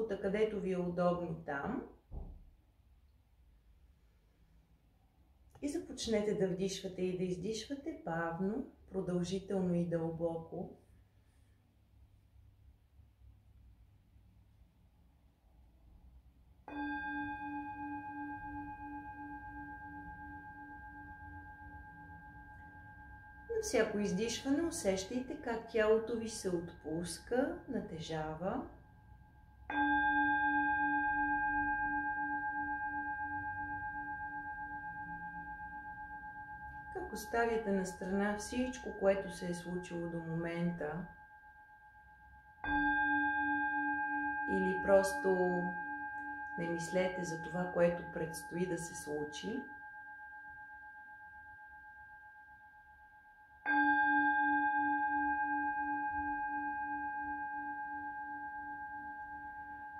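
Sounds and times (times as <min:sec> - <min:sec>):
singing bowl ringing: 0:16.7 - 0:26.8, 0:28.7 - 0:59.9.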